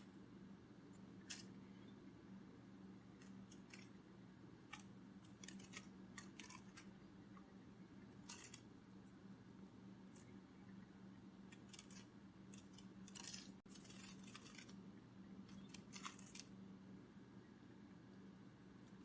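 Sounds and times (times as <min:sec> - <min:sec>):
steady low hum: 0:00.0 - 0:19.0.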